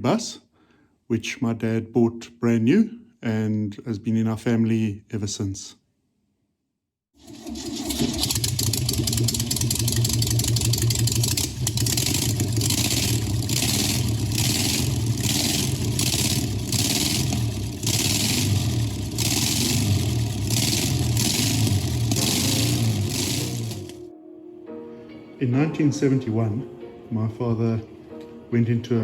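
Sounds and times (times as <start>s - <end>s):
vehicle engine revving: 7.3s - 24.1s
pulsing hiss: 8.2s - 24.0s.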